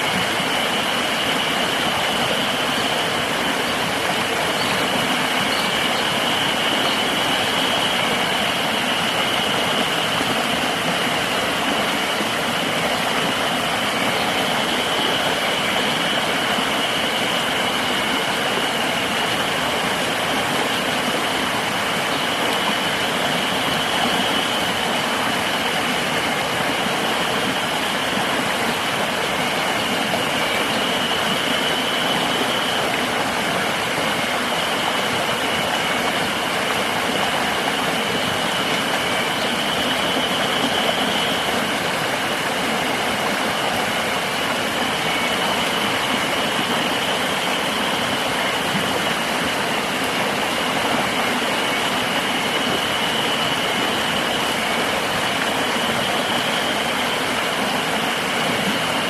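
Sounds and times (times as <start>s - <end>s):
river water rushing: 0.0s - 59.0s
high-pitched insect drone: 0.3s - 25.9s.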